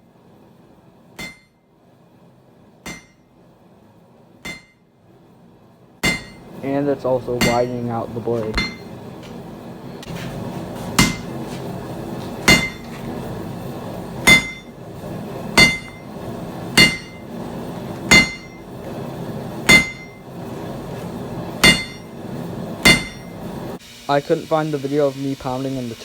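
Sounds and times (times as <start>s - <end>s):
hammer strikes on steel: 1.2s - 1.6s, 2.8s - 3.3s, 4.4s - 4.9s, 6.0s - 6.5s, 7.3s - 8.9s, 10.9s - 11.4s, 12.4s - 13.0s, 14.2s - 14.7s, 15.5s - 16.1s, 16.7s - 17.3s, 18.0s - 18.7s, 19.6s - 20.2s, 21.6s - 22.2s, 22.8s - 23.4s.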